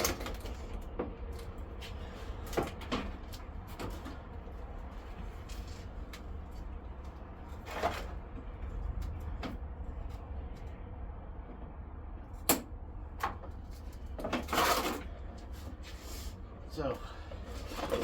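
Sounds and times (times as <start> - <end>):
scrape: 14.5 - 16.4.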